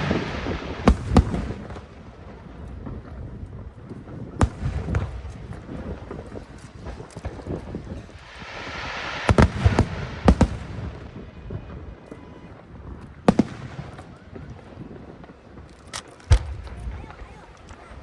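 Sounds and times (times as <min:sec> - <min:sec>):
fireworks booming: 0:00.0 - 0:17.6
firework hiss: 0:06.4 - 0:11.2.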